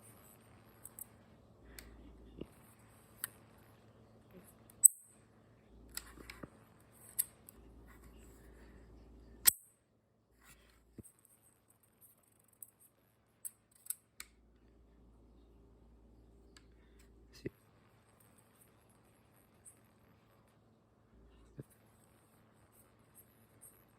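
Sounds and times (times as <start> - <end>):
faint low hum: 0.0 - 23.9.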